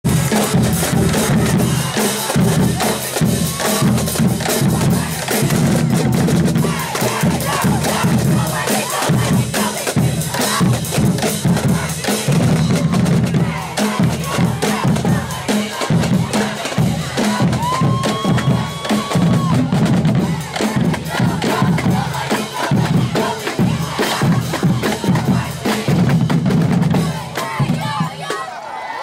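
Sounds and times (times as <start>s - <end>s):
snare and bass drums: 0.0s - 28.5s.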